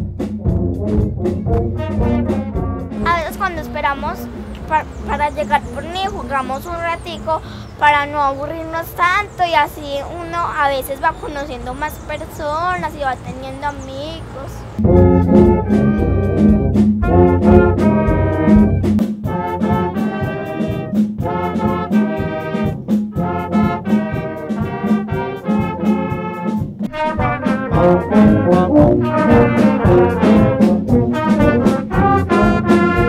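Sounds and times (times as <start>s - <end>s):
trumpets and trombones playing: 0.0s - 6.9s, 14.8s - 33.0s
quick percussive beat: 14.8s - 33.0s.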